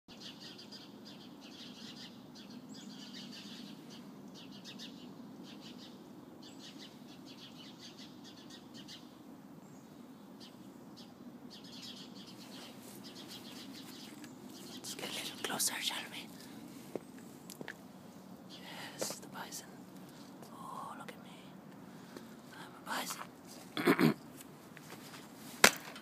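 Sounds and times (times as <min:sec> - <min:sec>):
songbirds trilling: 0:00.1 - 0:25.3.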